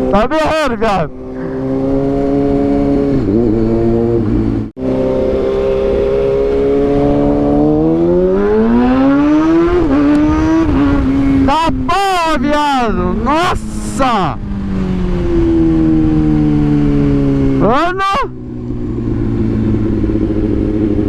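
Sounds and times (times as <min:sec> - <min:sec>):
motorcycle exhaust revving: 0:01.1 - 0:11.5, 0:18.3 - 0:21.0.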